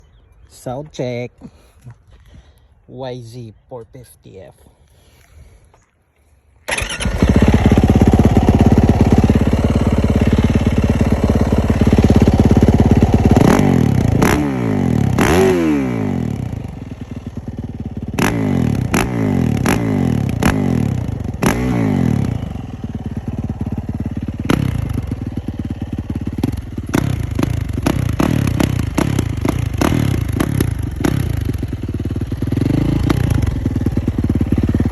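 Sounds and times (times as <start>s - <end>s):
sharp throttle blips: 6.7s - 16.7s
motorcycle engine revving: 6.7s - 34.9s.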